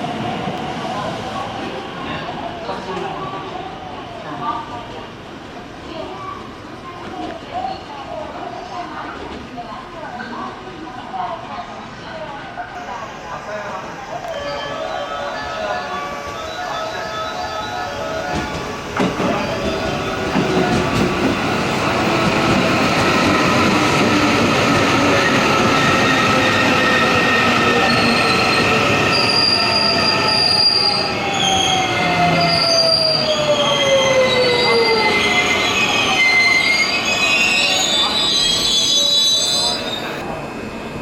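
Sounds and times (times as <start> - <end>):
brake and wheel squeals: 29.1 - 40.2.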